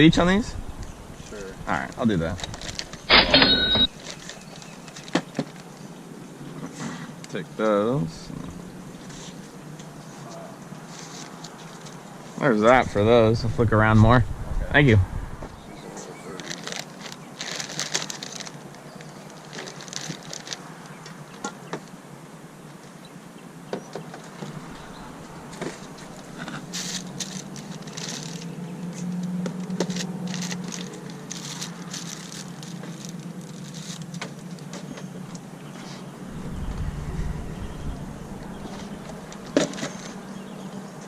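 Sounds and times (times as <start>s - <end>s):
low motor hum: 0.0s - 3.1s, 36.1s - 40.9s
objects clicking and rattling: 16.4s - 20.7s.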